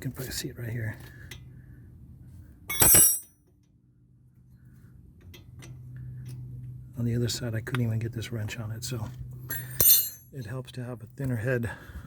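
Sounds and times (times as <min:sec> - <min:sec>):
wrench clinking against metal: 0:02.7 - 0:03.3, 0:09.5 - 0:10.3.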